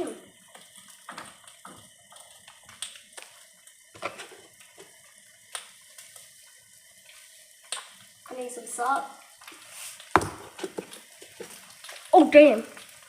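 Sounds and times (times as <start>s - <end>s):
eggs sizzling in a frying pan: 0.0s - 13.0s.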